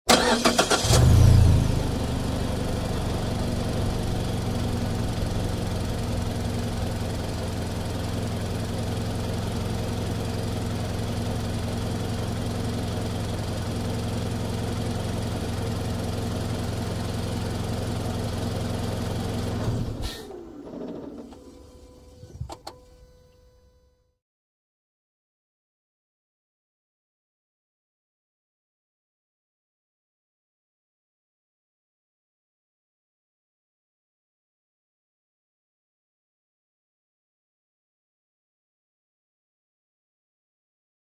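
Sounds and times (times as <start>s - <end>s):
car starter cranking: 0.1s - 1.3s
car engine idling: 0.1s - 19.6s.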